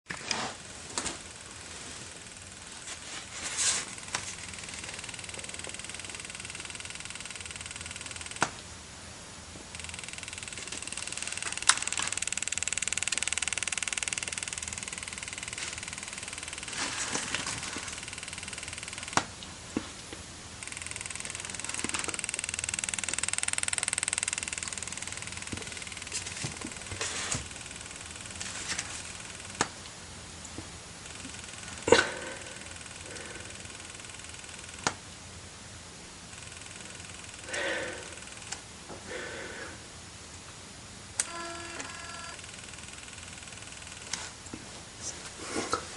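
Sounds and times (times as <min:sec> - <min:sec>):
flash battery pack clicking rapidly: 0:09.8 - 0:16.8.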